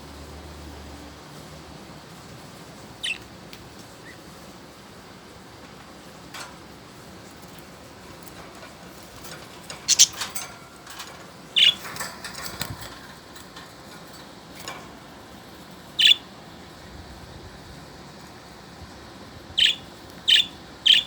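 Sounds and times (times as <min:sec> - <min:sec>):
budgerigars chirping: 0:03.0 - 0:03.3, 0:09.8 - 0:10.3, 0:11.5 - 0:11.9, 0:16.0 - 0:16.2, 0:19.6 - 0:21.0
bird clicks: 0:08.2 - 0:13.7.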